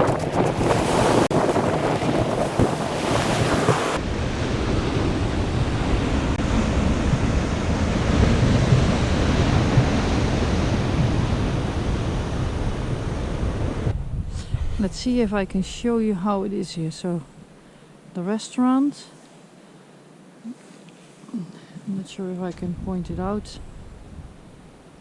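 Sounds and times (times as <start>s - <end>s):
wind buffeting microphone: 0.0s - 16.7s, 22.4s - 25.0s
ocean surf on shore: 0.0s - 25.0s.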